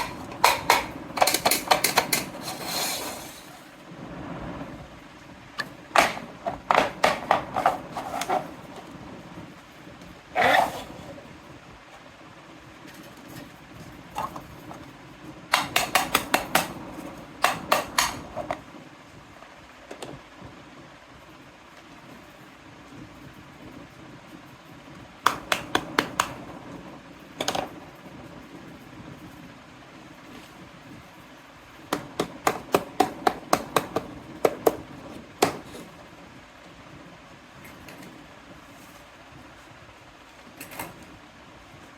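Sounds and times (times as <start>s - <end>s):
toy kitchen pieces tapping: 0.0s - 2.6s, 15.5s - 16.7s.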